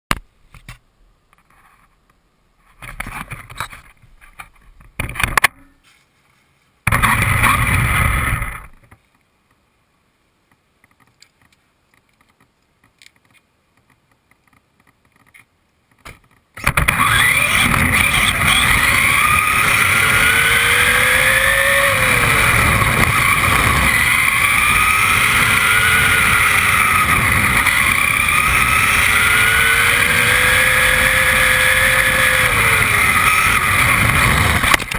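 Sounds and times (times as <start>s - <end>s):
rolling and wind noise: 0.1s - 34.9s
motor and gears whining: 6.9s - 8.8s, 16.6s - 34.9s.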